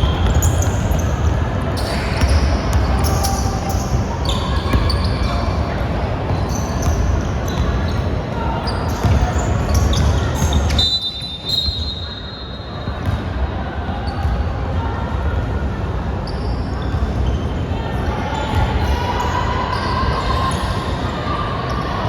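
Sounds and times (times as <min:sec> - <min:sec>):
basketball bouncing on court: 0:00.0 - 0:05.7, 0:08.9 - 0:10.8, 0:12.9 - 0:13.4
sneakers squeaking: 0:00.0 - 0:14.8, 0:15.4 - 0:22.0
players' voices: 0:00.0 - 0:22.0
referee's whistle: 0:08.7 - 0:13.0.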